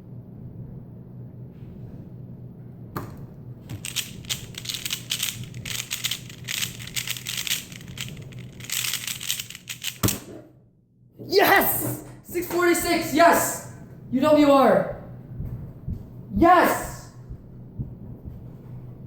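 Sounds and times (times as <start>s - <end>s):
puzzle cube plastic clicking: 3.7s - 10.2s.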